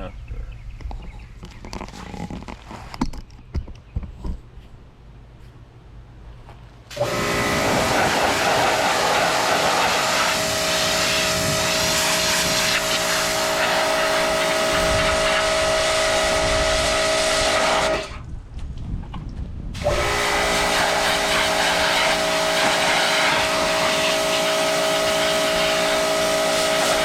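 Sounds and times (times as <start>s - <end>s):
pressure washer water hiss: 6.9s - 18.1s, 19.8s - 27.0s
motor whine: 6.9s - 18.2s, 19.8s - 27.0s.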